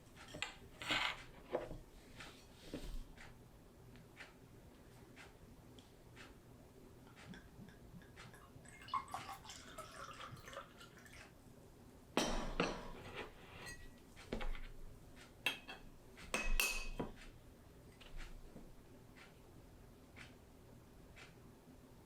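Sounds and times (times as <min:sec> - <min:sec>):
glassware and dishes clinking: 0:12.2 - 0:14.0, 0:15.5 - 0:17.2.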